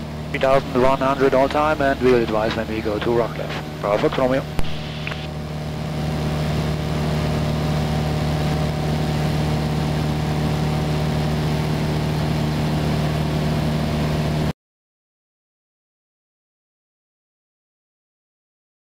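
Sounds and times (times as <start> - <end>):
propeller plane engine droning: 0.0 - 14.5.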